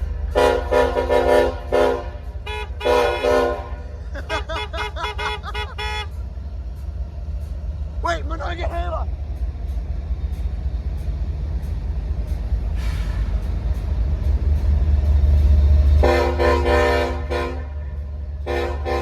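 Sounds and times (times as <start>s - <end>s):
diesel locomotives rumbling: 0.0s - 19.0s
locomotive air horn blasts: 0.3s - 6.2s, 16.0s - 19.0s.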